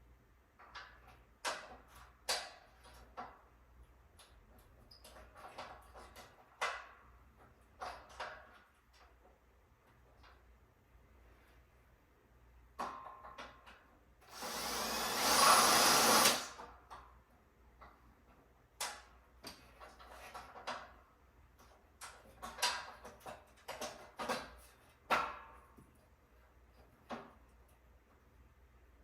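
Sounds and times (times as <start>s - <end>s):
power drill running: 14.3s - 16.6s.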